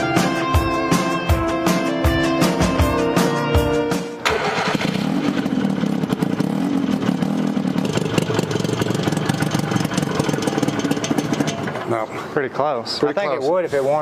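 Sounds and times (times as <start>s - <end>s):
small engine running: 4.3s - 12.0s.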